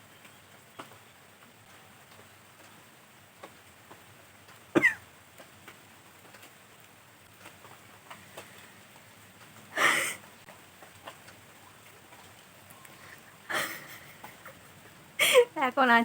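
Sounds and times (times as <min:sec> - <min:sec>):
person coughing: 0:04.8 - 0:05.0
faint small ticks: 0:05.3 - 0:09.7, 0:10.4 - 0:13.3
breath rushing through nose: 0:09.8 - 0:10.2.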